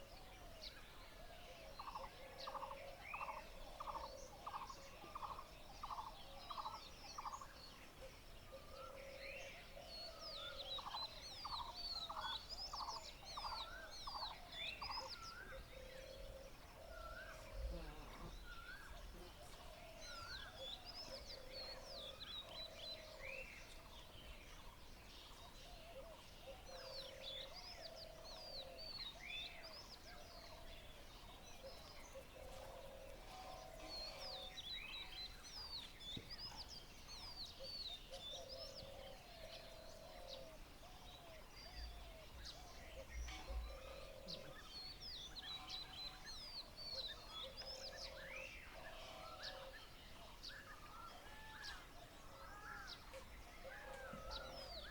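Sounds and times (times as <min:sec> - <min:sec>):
faint outdoor background noise: 0:00.0 - 0:54.9.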